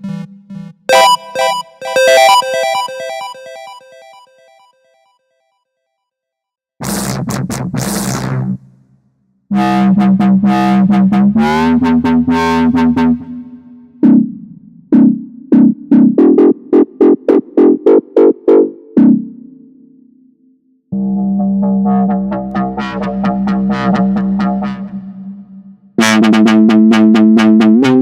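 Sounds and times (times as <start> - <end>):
short plucked synth chords: 0.0 - 4.6
sustained bright synth chords: 0.0 - 5.0.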